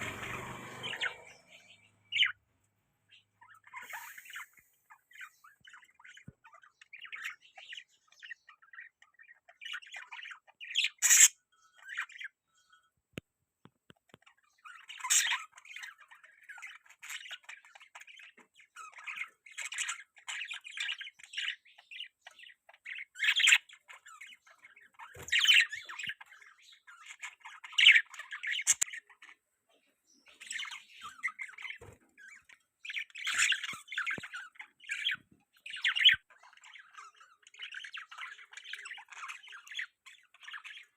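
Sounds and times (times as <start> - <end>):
budgerigars chattering and warbling: 0.0 - 2.4, 3.1 - 12.9, 14.0 - 40.9
loud sharp bird squawks: 3.7 - 4.8, 10.8 - 11.4.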